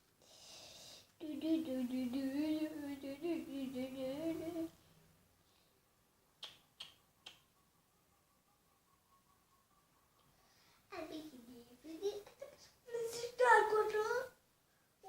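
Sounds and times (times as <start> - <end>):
girl humming a tune: 1.2 - 4.8.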